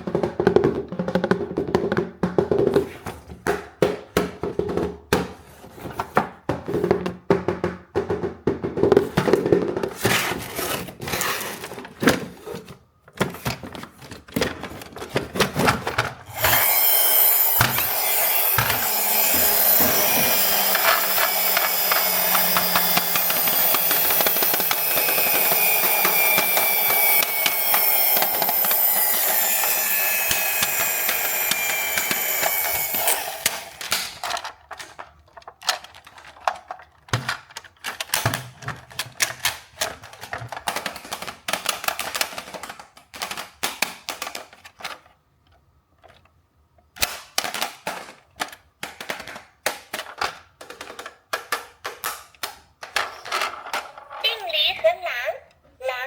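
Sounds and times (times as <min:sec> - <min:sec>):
toy vehicle whirring and crackling: 0:15.8 - 0:45.1.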